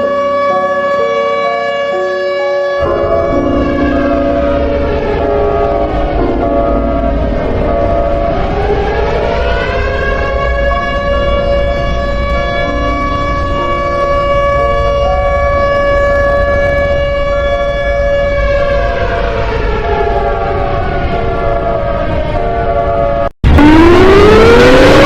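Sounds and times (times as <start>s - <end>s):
siren tone rising and falling: 0.0s - 25.0s
low rumble: 2.8s - 17.3s.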